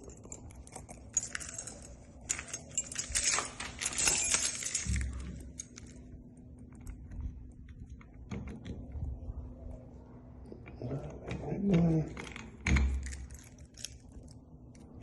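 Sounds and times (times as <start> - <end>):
keys jangling: 0.0 - 6.1.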